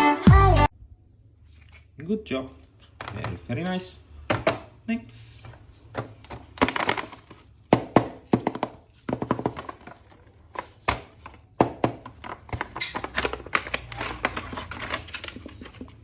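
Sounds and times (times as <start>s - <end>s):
clicks and taps handling toy packaging: 2.7s - 4.6s, 5.4s - 16.0s.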